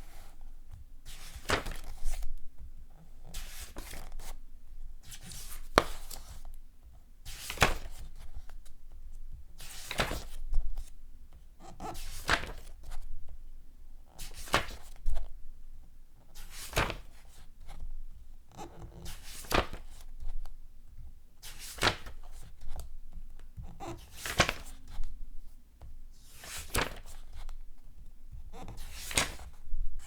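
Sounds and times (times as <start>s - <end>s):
paper pages turning: 1.1s - 2.2s, 12.0s - 13.0s, 14.2s - 15.0s, 16.4s - 17.4s, 19.0s - 20.3s, 21.4s - 22.8s, 23.9s - 25.0s, 26.3s - 27.5s, 28.6s - 29.6s.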